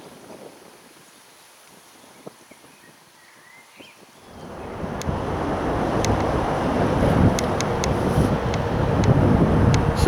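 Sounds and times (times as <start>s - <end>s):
wind buffeting microphone: 0.0s - 10.0s
steady rushing noise: 4.2s - 10.0s.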